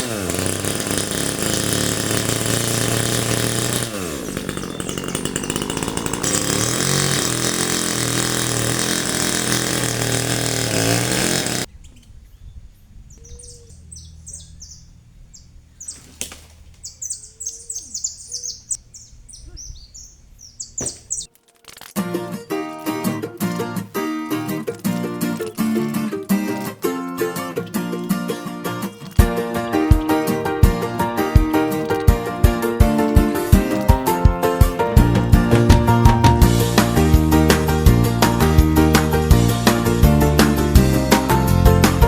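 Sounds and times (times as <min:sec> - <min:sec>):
chainsaw engine revving: 0:00.0 - 0:11.7, 0:22.0 - 0:42.0
birds chirping: 0:02.2 - 0:06.5, 0:11.4 - 0:40.0
strummed guitar music: 0:22.0 - 0:42.0.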